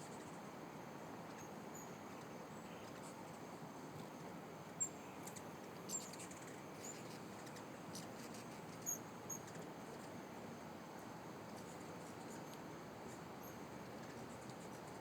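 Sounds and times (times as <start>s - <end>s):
steady background hiss: 0.0s - 15.0s
hummingbirds chirping: 4.8s - 9.6s.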